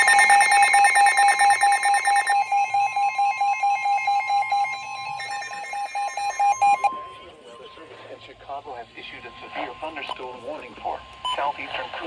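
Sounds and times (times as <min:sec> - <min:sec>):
rapid electronic beeping: 0:00.0 - 0:06.9
weather radio alarm tone: 0:00.0 - 0:07.2.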